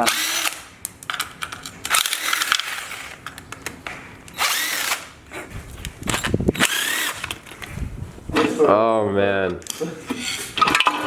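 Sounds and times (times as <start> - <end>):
metal parts clicking: 0.0 - 5.0
power tool motor whine: 4.4 - 5.1, 6.6 - 7.4.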